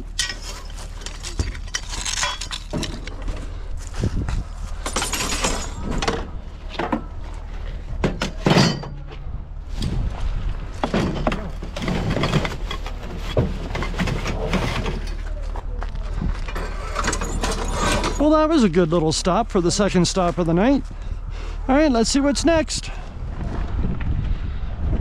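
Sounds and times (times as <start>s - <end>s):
scrap clattering and thudding: 0.0s - 18.5s.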